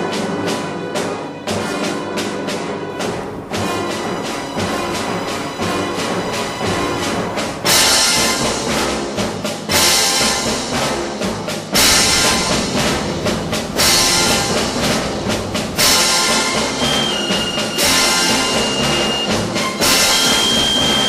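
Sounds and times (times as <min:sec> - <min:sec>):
dramatic orchestral music: 0:00.0 - 0:21.0
loud accented hit: 0:11.7 - 0:18.9.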